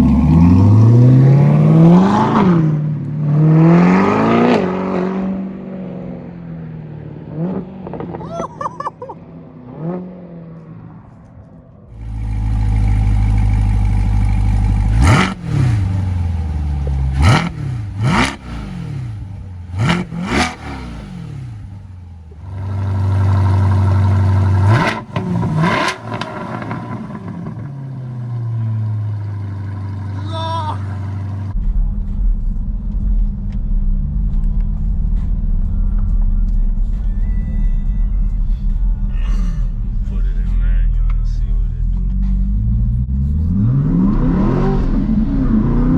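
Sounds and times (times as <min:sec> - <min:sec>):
engine revving in throttle blips: 0:00.0 - 0:05.9, 0:12.0 - 0:31.6, 0:41.8 - 0:45.9
car engine idling loud and low: 0:11.9 - 0:43.4.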